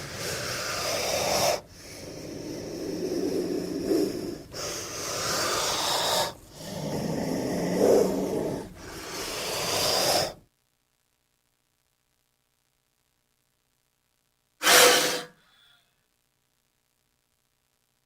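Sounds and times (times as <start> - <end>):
snake hissing: 0.0 - 10.4, 14.6 - 15.4.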